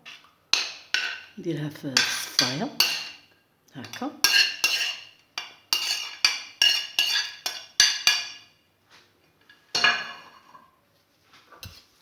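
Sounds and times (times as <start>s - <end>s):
metal utensils clinking: 1.9s - 8.5s.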